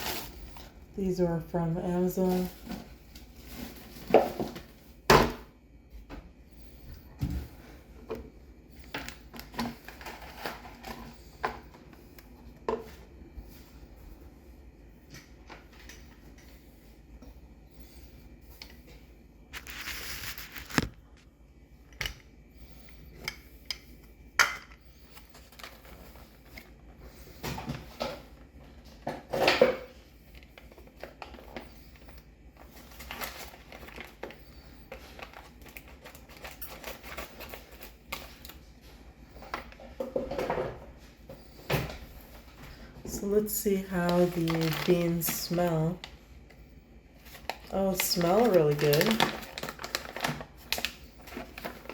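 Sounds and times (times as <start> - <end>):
kitchen items clattering: 1.4 - 5.5, 9.0 - 11.9, 27.4 - 30.0, 39.4 - 41.0, 41.6 - 46.0, 47.2 - 51.9
paper rustling: 19.5 - 21.0, 43.8 - 45.8, 47.2 - 51.9.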